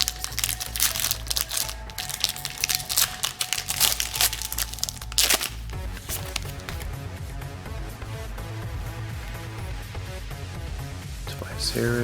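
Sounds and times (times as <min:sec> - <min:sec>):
plastic wrapper crinkling and tearing: 0:00.0 - 0:07.0
background music with bass line: 0:00.0 - 0:12.0.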